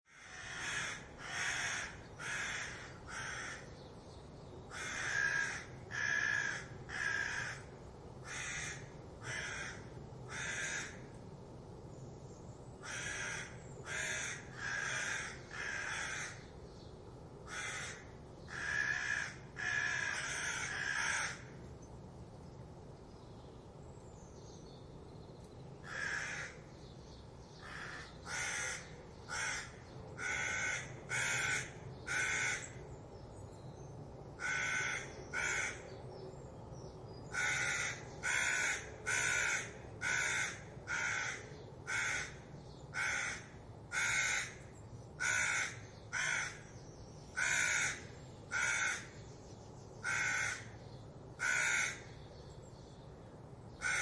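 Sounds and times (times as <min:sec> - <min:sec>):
crows cawing alarm calls: 0:00.1 - 0:03.8, 0:04.7 - 0:11.2, 0:12.8 - 0:16.5, 0:17.4 - 0:21.6, 0:25.8 - 0:26.7, 0:27.6 - 0:32.8, 0:34.4 - 0:35.9, 0:37.3 - 0:49.2, 0:50.0 - 0:50.8, 0:51.4 - 0:52.2, 0:53.8 - 0:54.0.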